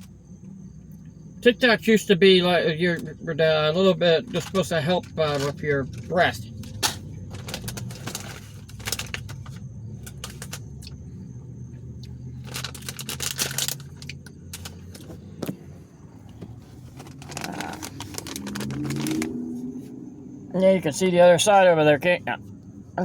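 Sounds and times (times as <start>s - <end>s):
steady low hum: 0.0s - 23.0s
objects being handled: 5.3s - 10.7s, 16.2s - 19.4s.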